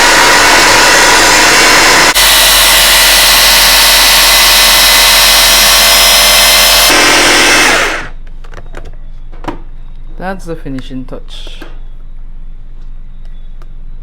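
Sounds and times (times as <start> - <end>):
electric blender running: 0.0 - 8.2.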